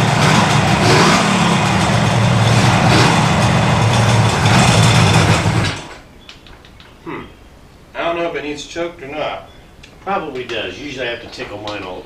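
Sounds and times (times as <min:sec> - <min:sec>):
two-stroke motorcycle engine running: 0:00.0 - 0:05.9.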